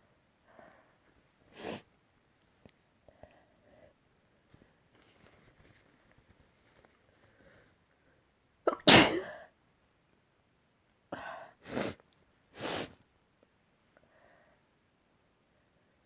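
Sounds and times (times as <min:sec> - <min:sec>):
person sneezing: 0:08.7 - 0:09.4.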